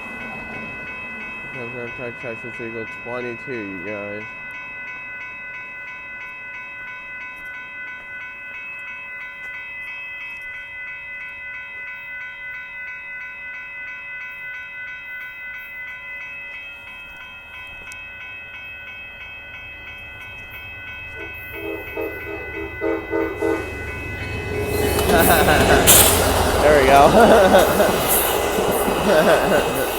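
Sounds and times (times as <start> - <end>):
crossing warning bell ringing: 0.0 - 29.9
train rumble: 18.0 - 29.9.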